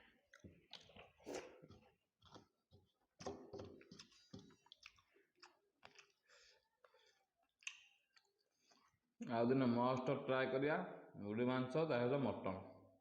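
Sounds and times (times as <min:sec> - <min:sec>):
person chewing crisp food: 0:00.0 - 0:03.1, 0:03.8 - 0:09.0.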